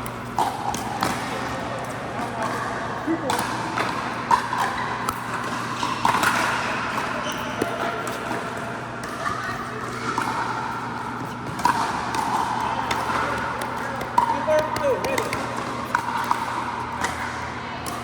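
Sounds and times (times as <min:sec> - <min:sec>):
paddle hitting plastic ball: 0:11.7 - 0:16.4.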